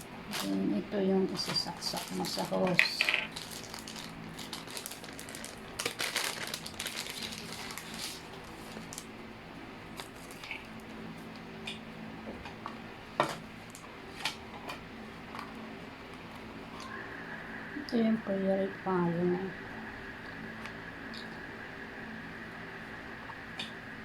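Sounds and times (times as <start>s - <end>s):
plastic wrapping crinkling: 0.0s - 0.6s, 1.4s - 9.1s, 9.9s - 10.9s.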